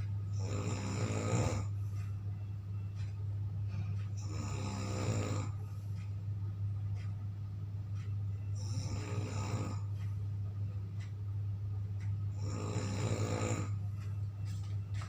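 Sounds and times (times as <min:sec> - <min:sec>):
steady low hum: 0:00.0 - 0:15.0
person snoring: 0:00.4 - 0:01.7, 0:04.2 - 0:05.6, 0:08.6 - 0:09.9, 0:12.4 - 0:13.8.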